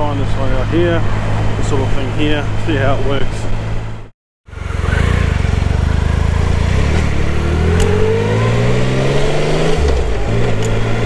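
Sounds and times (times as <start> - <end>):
motorcycle engine accelerating: 3.6 - 11.0.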